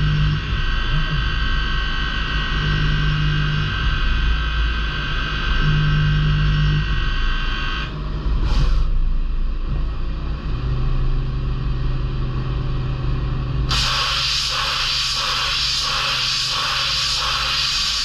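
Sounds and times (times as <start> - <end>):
loud even hiss: 13.7 - 18.0.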